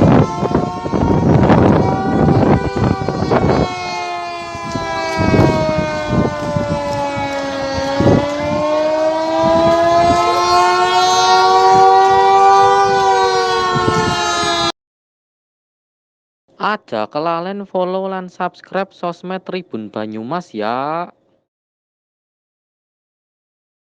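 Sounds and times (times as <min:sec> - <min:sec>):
wind buffeting microphone: 0:00.0 - 0:14.7
warning siren wailing: 0:00.0 - 0:14.8.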